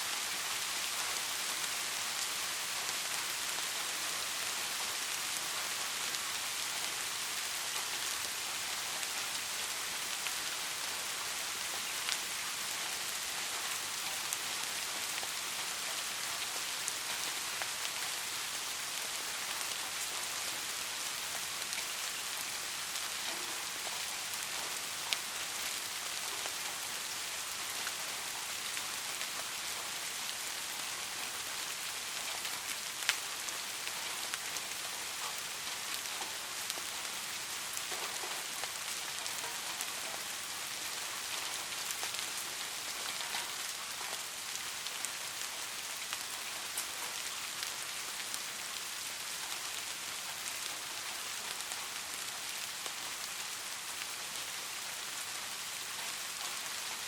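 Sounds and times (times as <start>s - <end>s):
soft rain falling: 0.0s - 57.0s.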